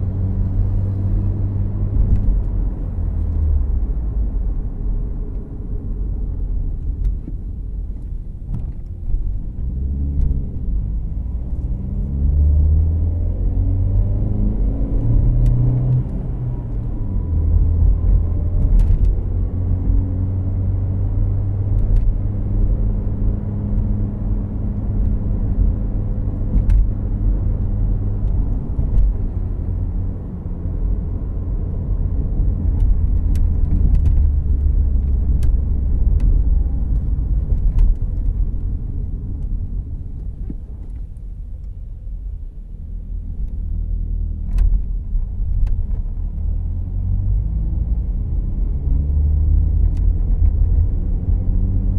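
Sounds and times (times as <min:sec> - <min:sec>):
road noise inside car: 0:00.0 - 0:51.9
car engine accelerating: 0:09.3 - 0:41.7, 0:42.8 - 0:51.9.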